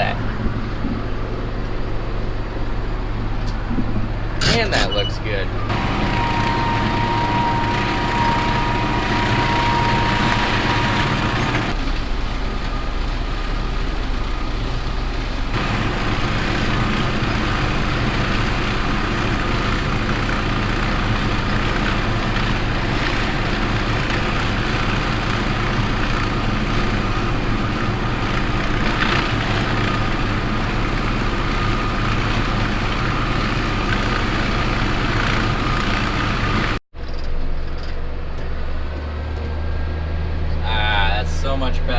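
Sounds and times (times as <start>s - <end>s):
tractor engine running: 0.0s - 41.9s
rotary shredder cutting grass: 4.4s - 5.0s, 5.7s - 11.8s, 15.5s - 36.8s.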